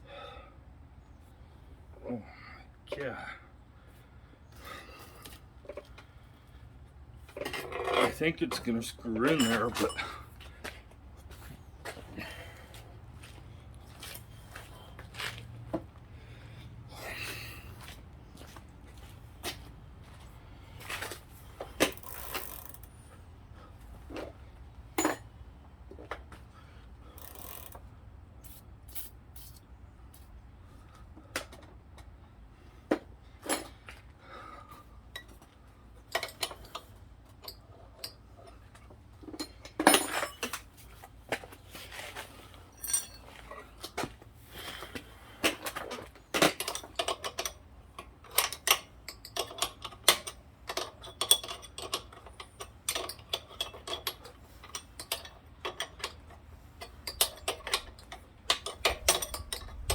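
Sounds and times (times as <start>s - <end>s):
metallic tool clinks and knocks: 9.2s - 10.2s, 39.3s - 40.6s, 42.7s - 43.5s.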